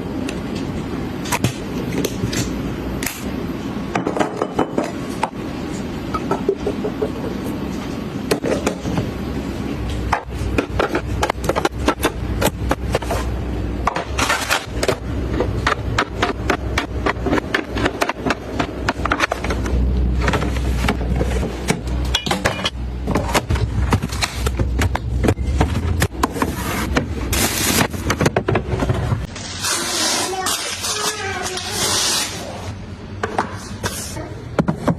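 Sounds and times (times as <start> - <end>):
objects knocking and clattering: 10.0 - 27.2, 27.8 - 29.3.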